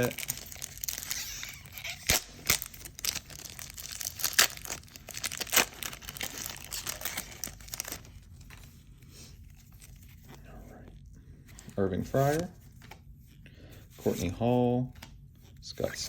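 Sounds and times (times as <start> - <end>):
wrapper tearing and crinkling: 0.0 - 8.7
cards rustling: 0.0 - 16.0.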